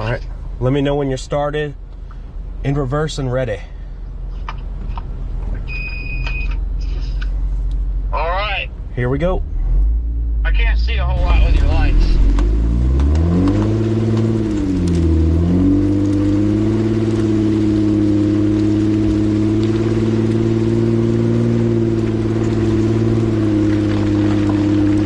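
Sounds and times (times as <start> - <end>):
engine revving under load: 9.1 - 25.0.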